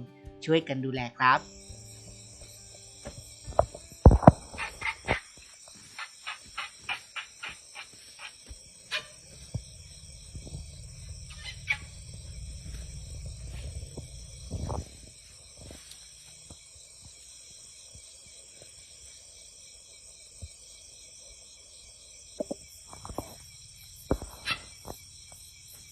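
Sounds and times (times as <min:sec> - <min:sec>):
short high animal calls: 0:06.0 - 0:09.3, 0:11.3 - 0:12.1
low rumbling noise: 0:08.8 - 0:15.8.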